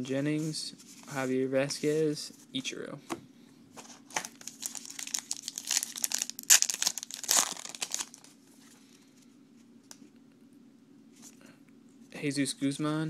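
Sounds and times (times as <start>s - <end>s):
wrapper tearing and crinkling: 4.2s - 8.3s.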